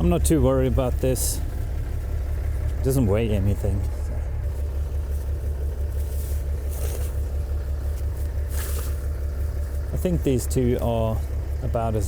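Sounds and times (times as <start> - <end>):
tractor diesel engine idling: 0.0 - 12.0
brief rustling: 4.0 - 9.2.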